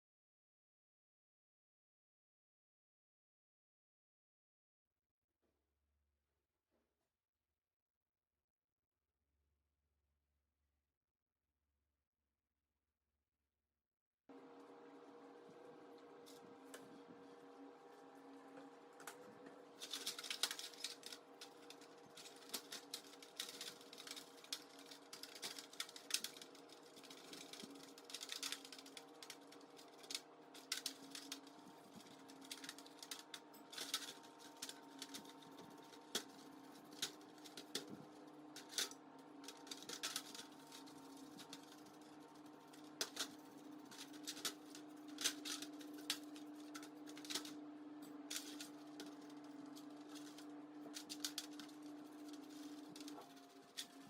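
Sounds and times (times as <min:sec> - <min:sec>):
steady low hum: 0:14.3 - 0:54.0
clicks and scrapes on metal parts: 0:19.8 - 0:54.0.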